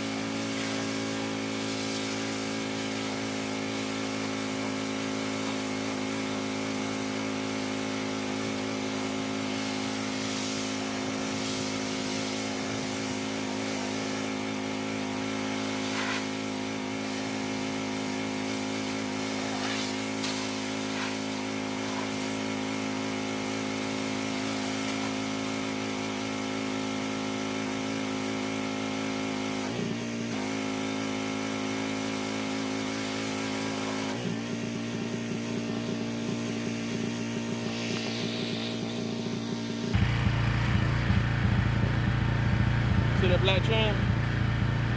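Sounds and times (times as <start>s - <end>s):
pressure washer engine hum: 0.0s - 44.9s
water spray hissing: 9.4s - 14.4s, 18.4s - 22.4s, 36.1s - 44.9s.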